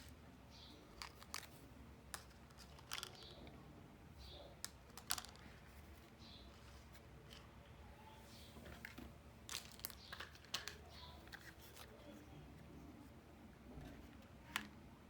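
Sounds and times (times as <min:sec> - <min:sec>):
plastic toy pieces clicking: 0:00.9 - 0:03.5, 0:04.6 - 0:05.6, 0:09.5 - 0:11.5.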